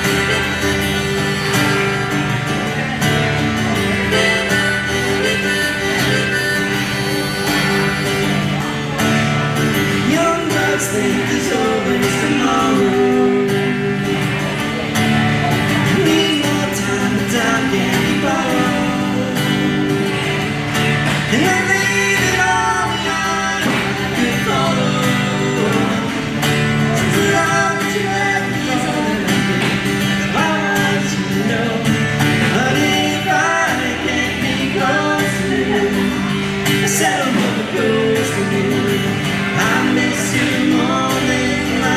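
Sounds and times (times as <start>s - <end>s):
guitar-led band accompaniment: 0.0s - 41.9s
person singing: 9.7s - 14.6s, 15.5s - 41.9s.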